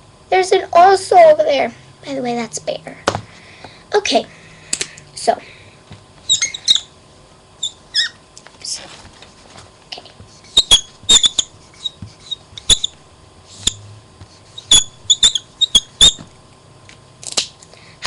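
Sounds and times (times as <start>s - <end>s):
marker squeaking on board: 6.3s - 6.9s, 7.6s - 8.2s, 10.5s - 13.0s, 13.6s - 16.3s.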